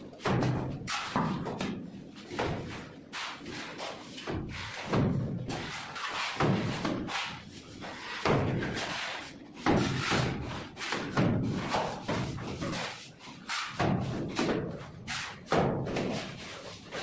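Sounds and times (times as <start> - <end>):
wet thuds of mortar on wall: 0.1 - 17.0.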